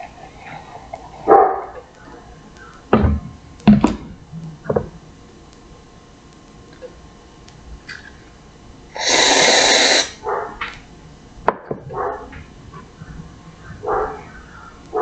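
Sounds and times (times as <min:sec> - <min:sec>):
dog barking: 0:01.3 - 0:01.8, 0:10.2 - 0:10.6, 0:11.9 - 0:12.3, 0:13.8 - 0:14.3
loud rushing hiss: 0:08.9 - 0:10.2.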